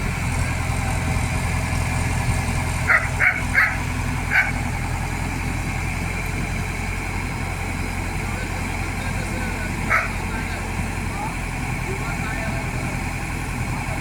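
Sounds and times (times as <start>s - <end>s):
diesel engine running: 0.0s - 14.0s
dog barking: 2.9s - 4.6s, 9.9s - 10.2s.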